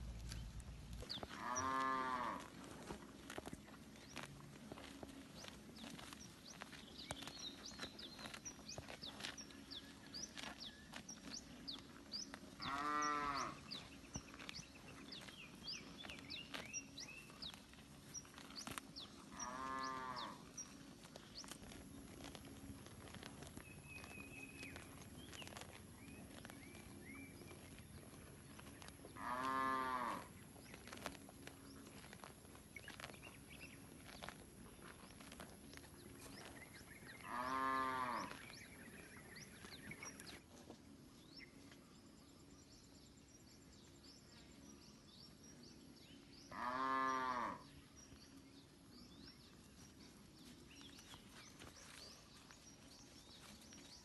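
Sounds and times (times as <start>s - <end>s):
cattle mooing: 1.3s - 2.5s, 12.6s - 13.6s, 19.3s - 20.4s, 29.1s - 30.3s, 37.2s - 38.4s, 46.5s - 47.6s.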